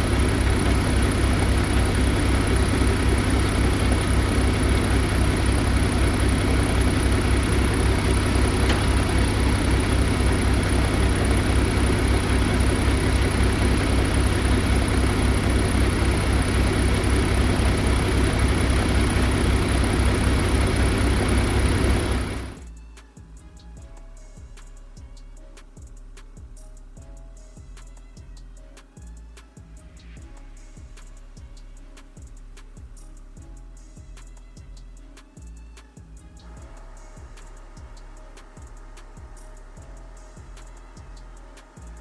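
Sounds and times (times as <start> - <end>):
diesel truck engine idling: 0.0 - 22.7.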